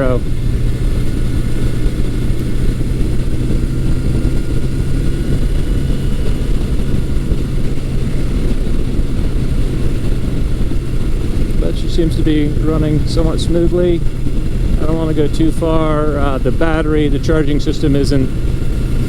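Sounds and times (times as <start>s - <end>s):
motorcycle engine running: 0.0s - 19.0s.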